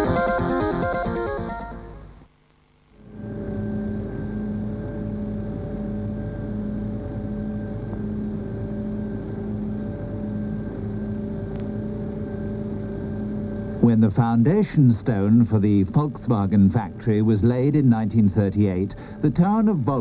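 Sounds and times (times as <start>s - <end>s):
machinery hum with held tones: 0.0s - 20.0s.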